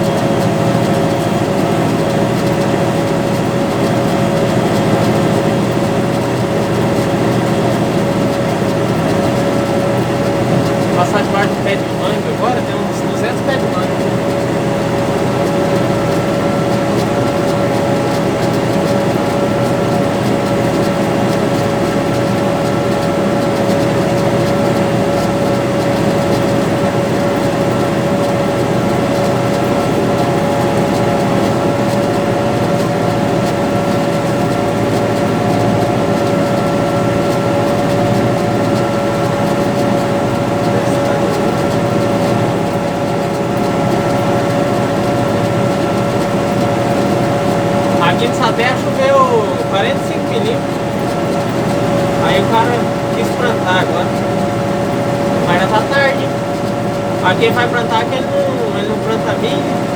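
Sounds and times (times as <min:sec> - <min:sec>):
tractor diesel engine under load: 0:00.0 - 0:59.9.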